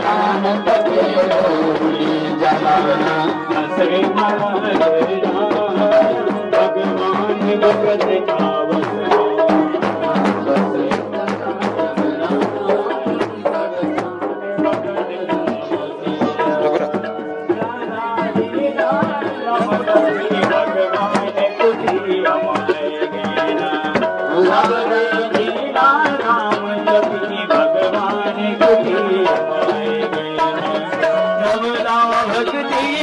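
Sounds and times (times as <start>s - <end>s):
hand drums beating: 0.0s - 33.0s
person singing: 0.0s - 33.0s.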